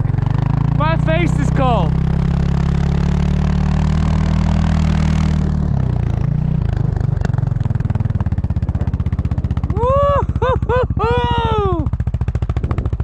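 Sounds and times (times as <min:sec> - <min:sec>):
small engine running and idling: 0:05.4 - 0:13.0.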